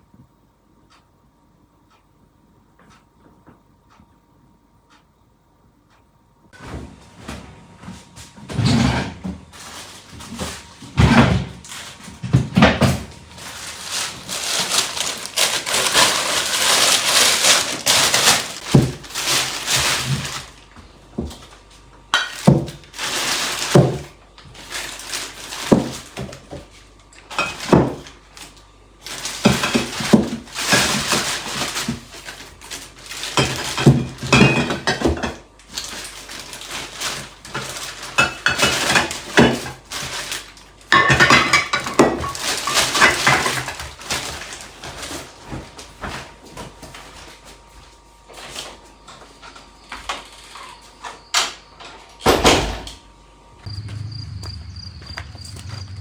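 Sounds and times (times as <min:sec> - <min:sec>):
objects knocking and thunking: 0:06.6 - 0:20.4, 0:22.2 - 0:24.2, 0:25.6 - 0:28.1
scraping or rustling: 0:08.4 - 0:20.6.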